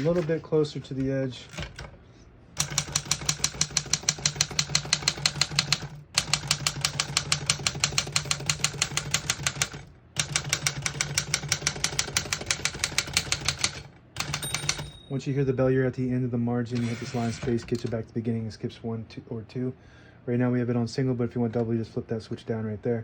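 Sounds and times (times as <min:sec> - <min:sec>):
typewriter typing: 0:01.5 - 0:01.9, 0:02.6 - 0:15.0.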